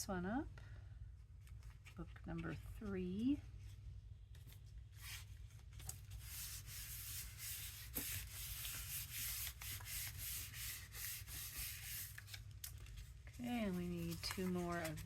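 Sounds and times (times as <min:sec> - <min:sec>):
paper being rubbed by hand: 0:06.1 - 0:12.4, 0:13.4 - 0:15.0.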